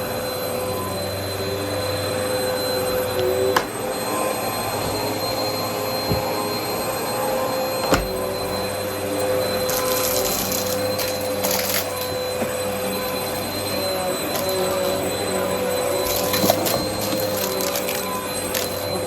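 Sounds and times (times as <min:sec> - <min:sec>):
vacuum cleaner whining: 0:00.0 - 0:19.0.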